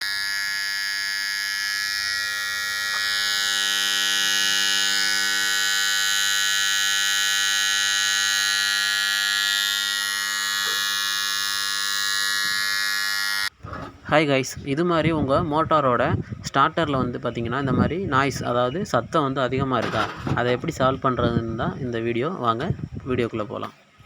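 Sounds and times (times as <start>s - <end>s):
loud electrical buzz: 0.0s - 13.7s, 16.7s - 22.0s.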